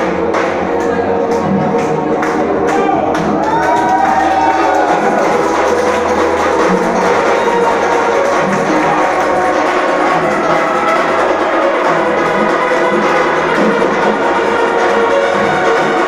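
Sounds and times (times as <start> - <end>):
background music: 0.0 - 16.0.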